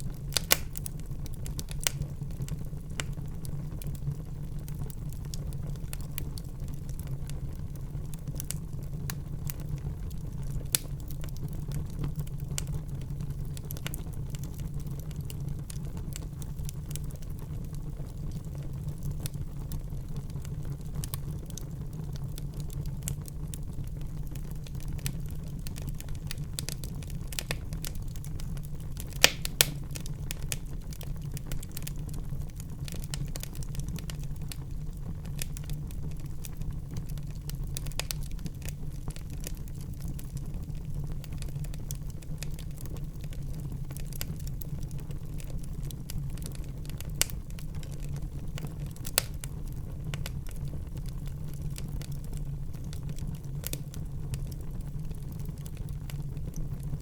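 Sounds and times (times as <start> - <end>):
fire pops: 0.0 - 4.0, 8.3 - 12.8, 20.6 - 57.0
wood fire crackling: 0.0 - 57.0.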